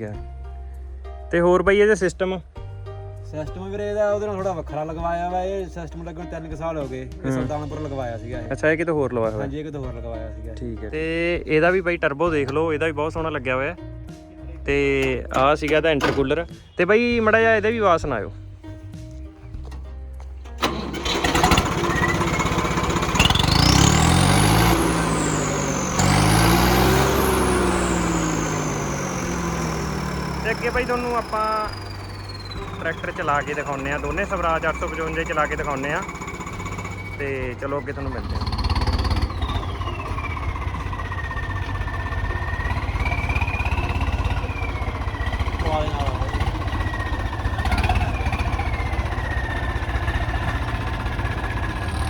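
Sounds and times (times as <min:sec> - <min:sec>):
tractor diesel engine revving: 0:00.0 - 0:52.0
turbo whistling: 0:14.8 - 0:18.0, 0:20.5 - 0:52.0
high turbo whistle: 0:36.1 - 0:46.4.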